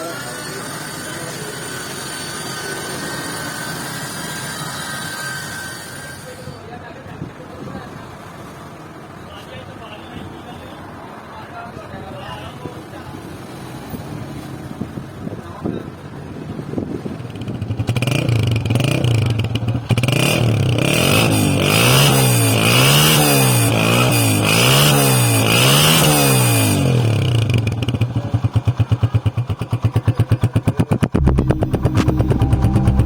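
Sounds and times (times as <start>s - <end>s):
motorcycle engine revving: 17.0s - 33.0s.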